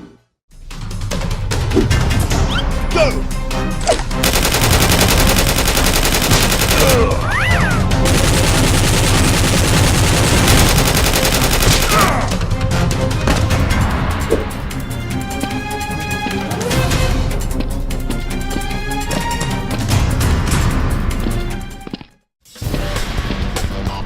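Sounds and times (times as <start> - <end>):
action background music: 0.5 - 21.9
rapid automatic gunfire: 4.2 - 7.2, 8.0 - 12.3.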